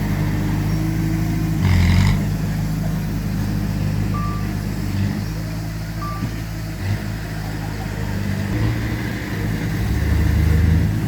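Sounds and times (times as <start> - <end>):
diesel machinery running: 0.0 - 11.0
short beep: 4.1 - 4.6, 6.0 - 6.4.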